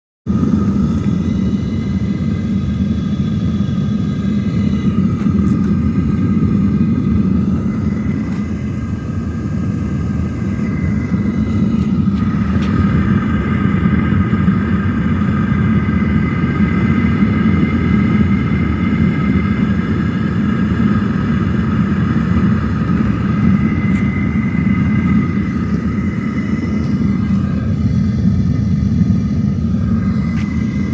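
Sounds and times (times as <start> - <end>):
furnace burner roaring: 0.3 - 30.9.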